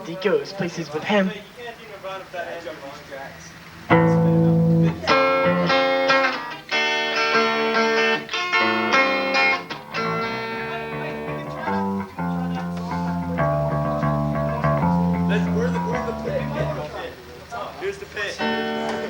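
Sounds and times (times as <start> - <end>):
live rock band playing: 3.8 - 17.0.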